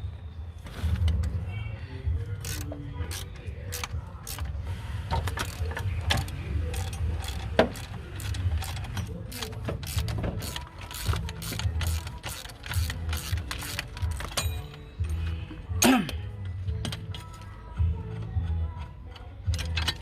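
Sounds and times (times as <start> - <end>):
metallic clicks and knocks of tools: 5.1 - 15.4, 16.1 - 20.0.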